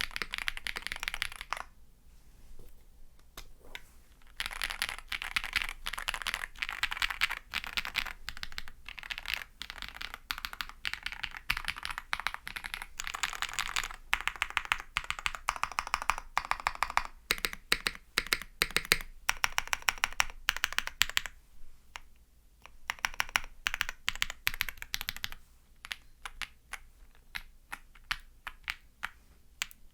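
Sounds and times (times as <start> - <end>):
mechanical keyboard typing: 0.0 - 1.6, 4.3 - 21.3, 22.9 - 26.5.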